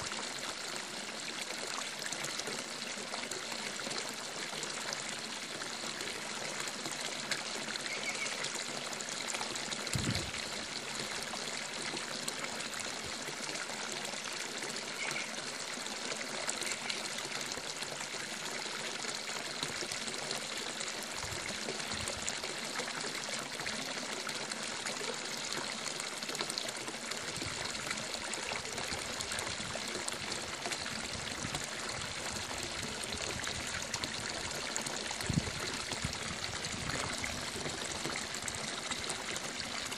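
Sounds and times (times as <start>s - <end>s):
soft low thumps: 9.9s - 10.3s.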